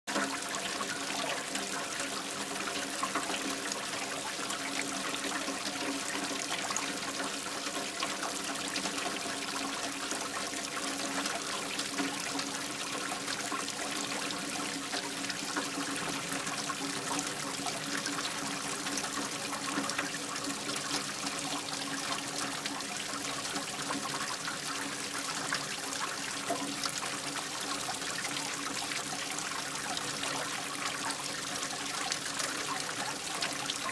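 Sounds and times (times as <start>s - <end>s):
water pouring into a drain: 0.1s - 33.9s.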